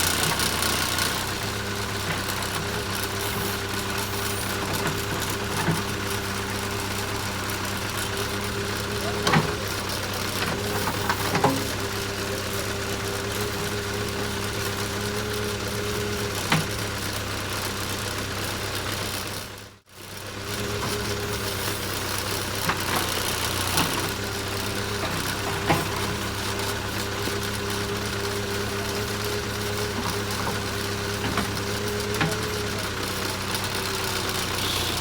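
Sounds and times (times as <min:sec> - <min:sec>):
diesel engine running: 0:00.0 - 0:35.0.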